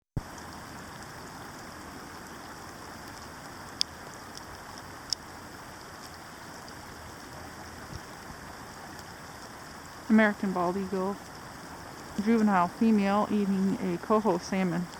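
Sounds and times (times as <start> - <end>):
water hissing: 0.2 - 14.9.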